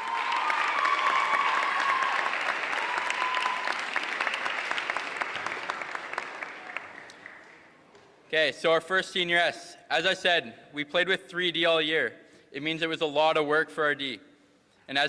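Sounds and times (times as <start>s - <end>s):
cheer or whoop: 0.0s - 4.0s
audience applauding: 0.0s - 7.7s.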